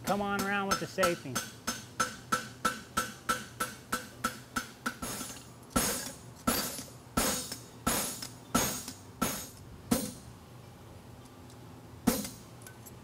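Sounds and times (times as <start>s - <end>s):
hammer striking steel on anvil: 0.1s - 10.2s.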